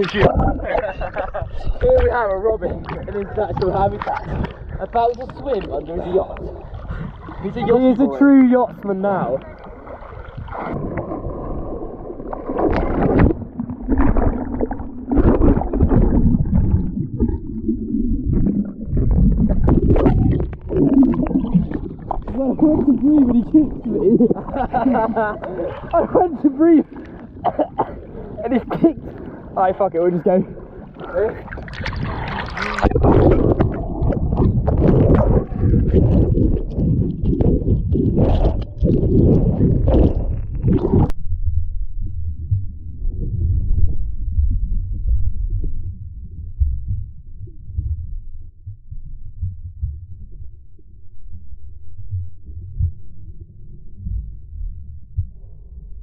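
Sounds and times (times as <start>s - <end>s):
muffled underwater gurgling: 0.0s - 41.2s
knocks and splashes: 9.6s - 28.0s, 31.3s - 41.1s.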